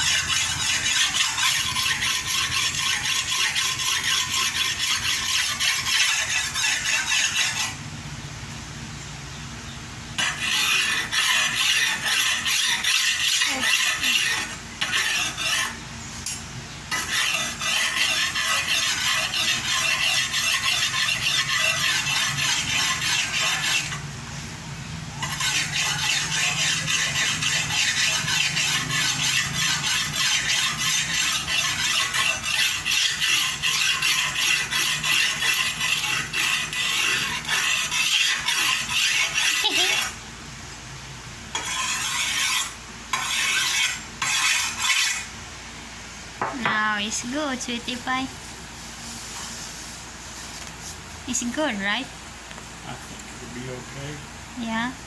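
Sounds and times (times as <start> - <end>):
machete blade being sharpened: 0.0 - 7.8, 10.2 - 24.0, 25.2 - 40.2, 41.6 - 45.3.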